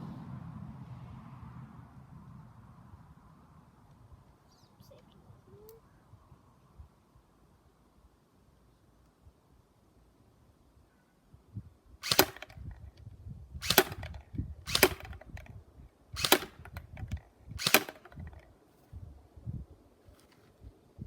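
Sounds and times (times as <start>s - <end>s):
airsoft rifle shots: 12.0s - 12.7s, 13.6s - 15.5s, 16.2s - 18.4s.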